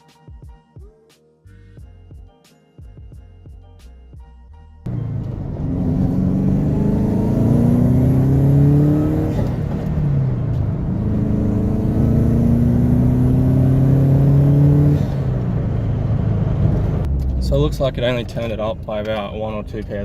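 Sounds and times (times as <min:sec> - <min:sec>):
turbocharged car engine accelerating: 0:04.9 - 0:18.2.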